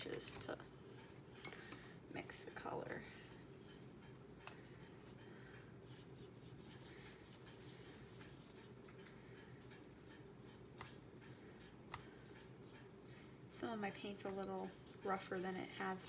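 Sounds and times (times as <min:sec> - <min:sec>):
paintbrush scratching on palette: 0:05.8 - 0:08.9, 0:09.7 - 0:16.0.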